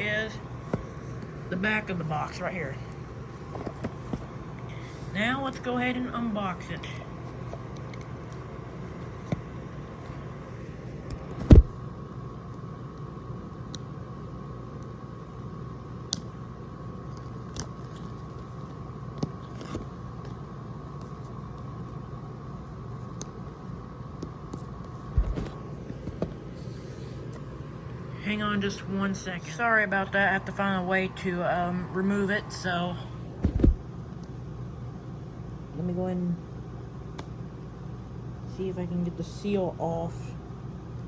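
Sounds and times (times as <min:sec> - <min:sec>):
steady background hum: 0:00.0 - 0:41.0
cardboard box clicks and scratches: 0:03.3 - 0:05.1, 0:07.0 - 0:11.7, 0:25.2 - 0:27.4.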